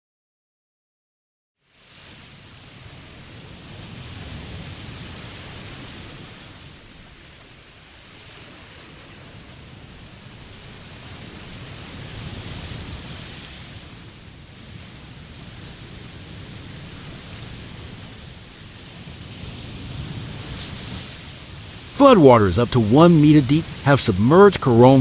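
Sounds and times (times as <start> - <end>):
floodwater rushing: 22.0 - 25.0.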